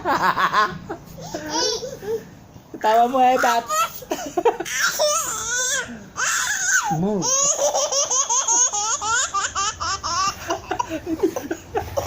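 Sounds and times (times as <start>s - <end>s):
baby laughing: 3.4s - 12.0s.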